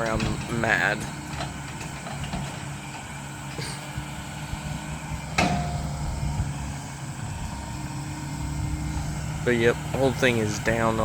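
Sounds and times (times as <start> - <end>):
machine engine running: 0.0 - 11.0
sharp metallic clank: 5.4 - 6.0.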